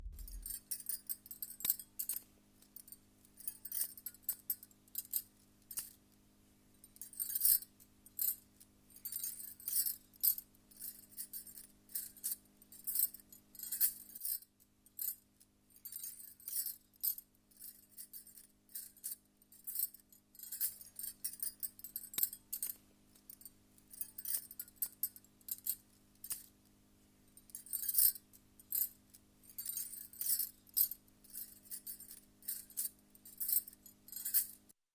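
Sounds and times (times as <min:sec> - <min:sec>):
steady low hum: 0:00.0 - 0:01.0
bangles clinking: 0:00.1 - 0:06.0, 0:06.9 - 0:26.5, 0:27.4 - 0:34.8.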